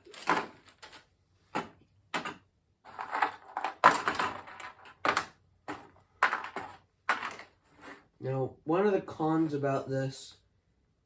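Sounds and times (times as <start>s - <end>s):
packaging and plastic parts handled: 0.0s - 1.1s.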